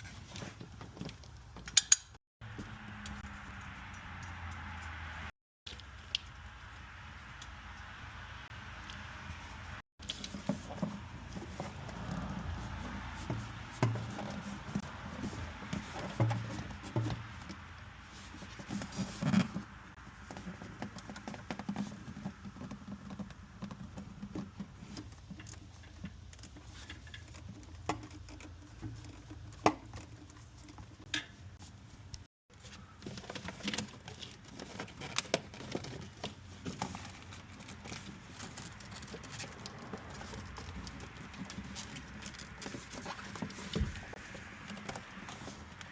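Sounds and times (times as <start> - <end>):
hand tools clicking and knocking: 0.2 - 2.2.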